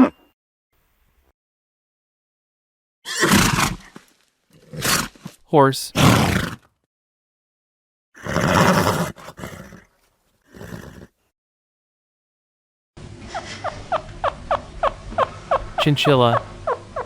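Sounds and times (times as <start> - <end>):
horse calling: 5.9 - 6.7, 10.5 - 11.1, 13.3 - 17.0.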